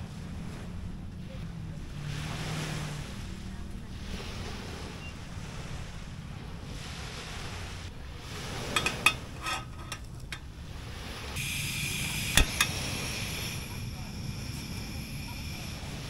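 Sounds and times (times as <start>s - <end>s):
surf washing on beach: 0.0s - 16.0s
wind on microphone: 0.0s - 16.0s.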